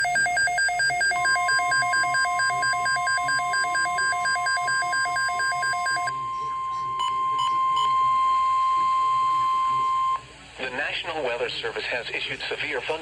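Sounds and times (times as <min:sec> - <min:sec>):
two-tone alert beeping: 0:00.0 - 0:10.2
steady alarm tone: 0:00.0 - 0:10.3.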